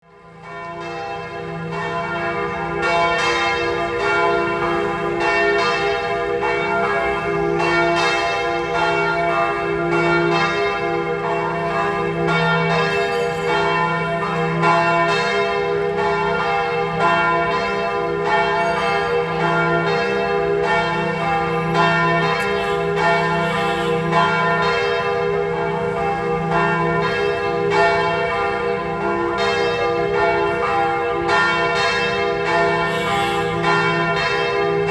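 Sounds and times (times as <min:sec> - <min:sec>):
church bells pealing: 0:00.0 - 0:34.9.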